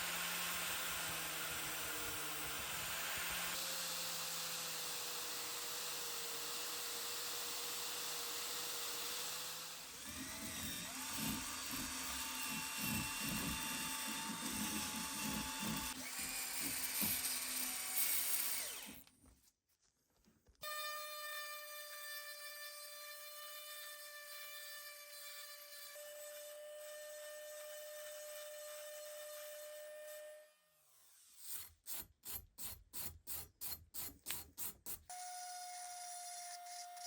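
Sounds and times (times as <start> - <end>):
power tool whining: 0.0 - 19.1.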